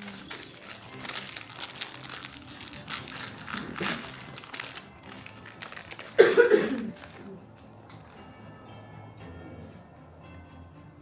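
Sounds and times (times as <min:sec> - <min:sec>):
packaging crinkling and rustling: 0:00.0 - 0:08.2
faint background music: 0:00.0 - 0:11.0.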